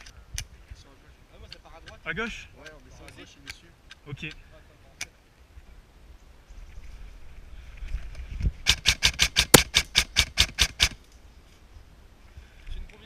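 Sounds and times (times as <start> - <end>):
airsoft pistol firing clacks: 9.0 - 10.9.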